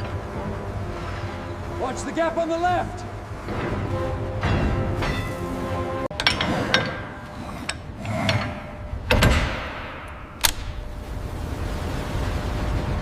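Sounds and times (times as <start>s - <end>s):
metal knocks and clangs: 3.4s - 10.6s
low mechanical rumble: 6.9s - 13.0s.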